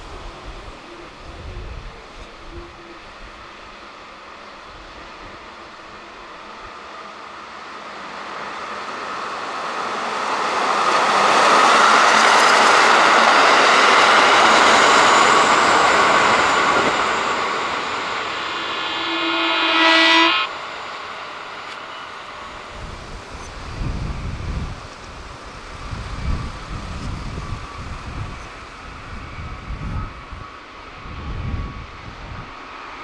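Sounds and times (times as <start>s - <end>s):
reversed electric train passing: 0.0s - 33.0s
train horn: 11.4s - 30.2s.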